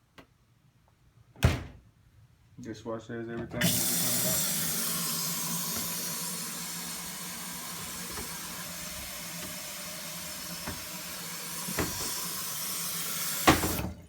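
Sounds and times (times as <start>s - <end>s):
water running from faucet: 3.6s - 14.0s.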